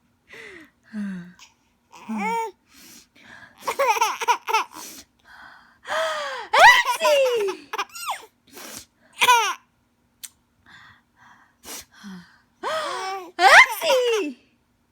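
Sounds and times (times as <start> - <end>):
baby laughing: 3.6 - 4.8, 6.6 - 8.3, 9.2 - 9.6, 13.1 - 14.2.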